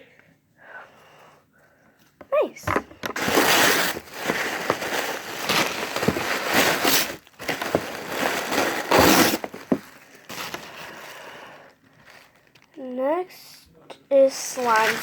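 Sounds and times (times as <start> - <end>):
plastic packaging crinkling: 3.0 - 12.8, 14.5 - 15.0.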